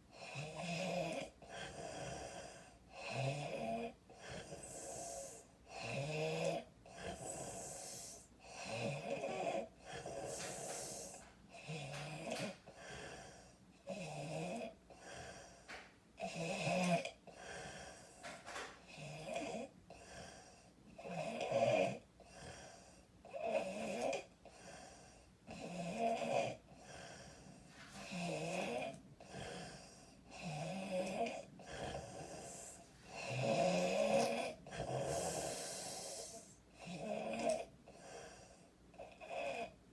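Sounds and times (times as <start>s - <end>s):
person snoring: 3.1s - 12.6s, 28.0s - 37.7s.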